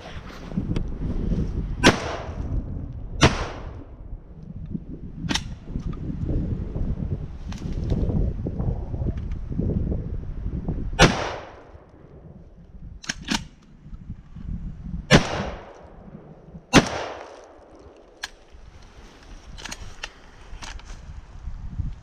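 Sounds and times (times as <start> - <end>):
shotgun shots: 1.8 - 2.4, 3.2 - 3.8, 11.0 - 11.7, 15.1 - 15.8, 16.7 - 17.7
sharp clicks: 13.0 - 13.7.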